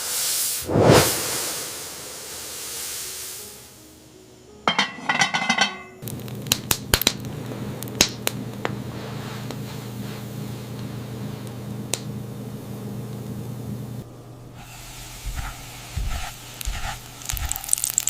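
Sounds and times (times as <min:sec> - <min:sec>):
steady low hum: 0:00.6 - 0:17.7
cookware clinking: 0:04.7 - 0:06.0.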